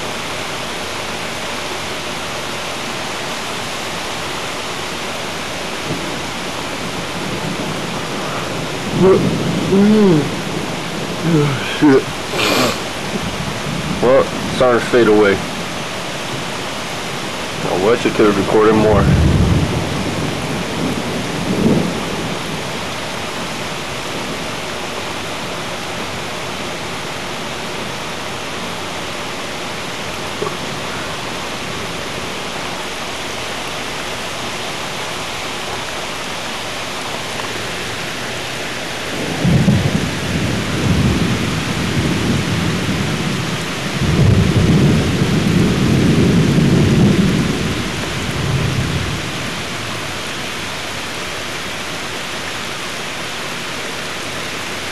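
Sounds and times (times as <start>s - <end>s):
steady rain: 0.0s - 54.9s
rolling thunder: 5.8s - 16.5s, 17.5s - 25.1s, 38.8s - 50.1s.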